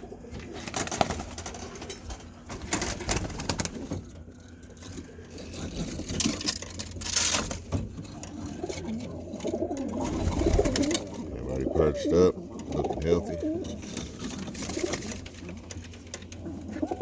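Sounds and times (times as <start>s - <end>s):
pigeons cooing: 0.0s - 1.7s, 8.0s - 17.0s.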